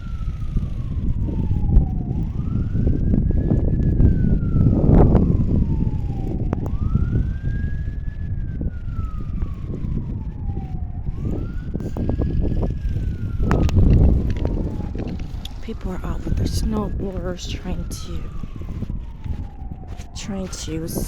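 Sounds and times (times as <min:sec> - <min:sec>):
distant siren wailing: 0:00.0 - 0:21.0
loud low rumbling: 0:00.0 - 0:21.0
footsteps crunching in snow: 0:18.8 - 0:20.9.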